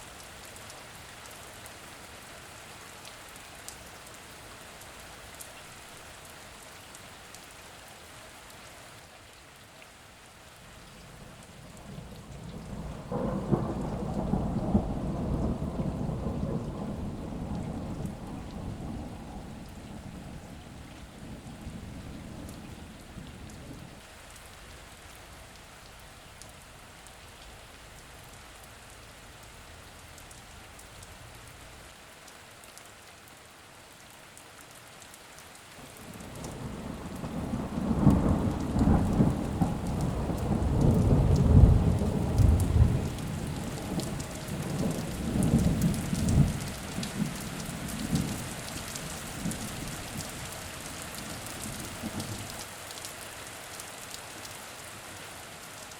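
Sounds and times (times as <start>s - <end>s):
steady rain: 0.0s - 55.9s
rolling thunder: 11.6s - 24.0s, 36.1s - 48.4s.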